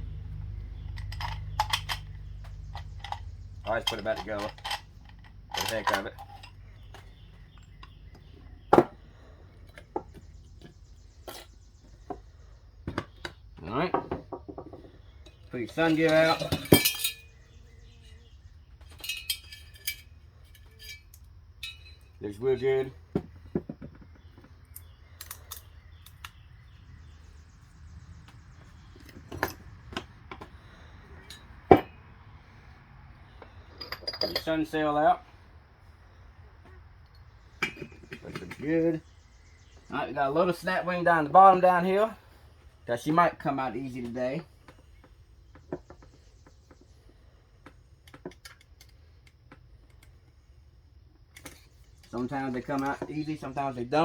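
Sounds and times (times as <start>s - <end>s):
metal parts clinking and knocking: 0.8s - 8.0s, 14.0s - 17.4s, 18.8s - 22.2s, 23.4s - 26.3s, 33.3s - 34.7s, 37.1s - 38.8s, 51.3s - 53.5s
steel parts clinking together: 3.0s - 6.6s, 15.6s - 17.3s, 18.9s - 22.2s, 33.8s - 34.7s.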